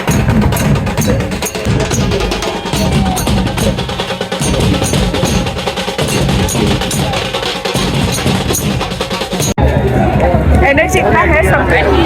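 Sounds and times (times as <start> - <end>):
sharp clacks: 0.0 - 9.6
percussion music with drum beat: 0.0 - 11.0.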